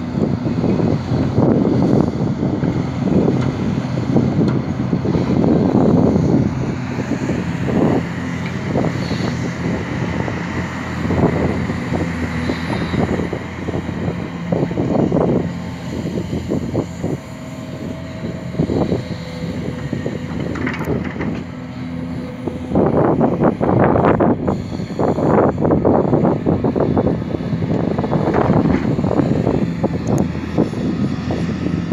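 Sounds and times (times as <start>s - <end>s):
excavator diesel engine running: 0.0s - 31.9s
excavator clatter: 7.3s - 23.6s, 27.0s - 31.9s.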